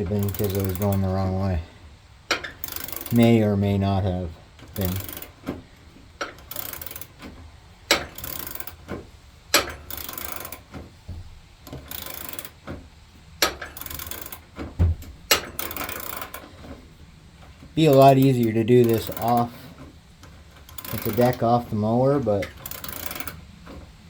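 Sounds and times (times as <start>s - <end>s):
ratchet wrench clicking: 0.1s - 1.1s, 2.3s - 3.4s, 4.7s - 5.5s, 6.2s - 8.9s, 9.5s - 10.7s, 11.6s - 12.6s, 13.4s - 14.5s, 15.3s - 16.5s, 17.8s - 19.5s, 20.2s - 21.8s, 22.4s - 23.5s
dull knock: 14.8s - 15.1s.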